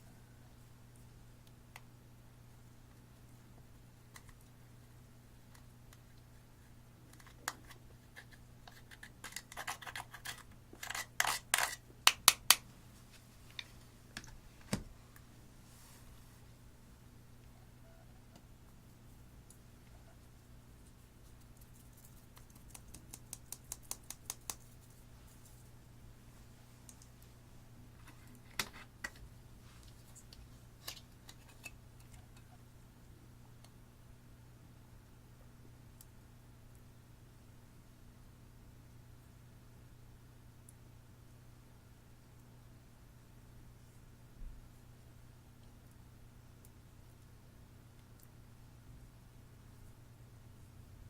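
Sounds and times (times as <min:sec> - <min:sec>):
faint steady hum: 0:00.0 - 0:51.0
plastic and eyeshadow scraping: 0:07.1 - 0:11.8, 0:29.8 - 0:32.4
sharp clicks and taps: 0:22.3 - 0:24.7.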